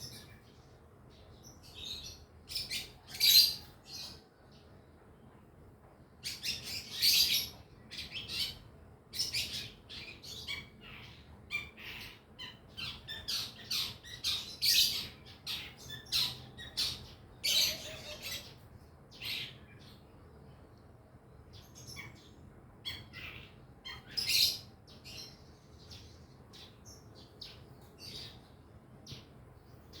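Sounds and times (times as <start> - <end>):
shrike twittering and chattering: 9.2 - 20.0, 21.5 - 29.3.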